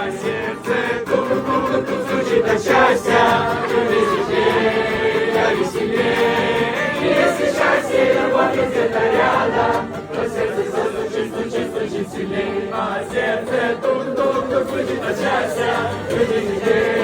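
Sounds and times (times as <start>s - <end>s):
group of people singing: 0.0s - 17.0s.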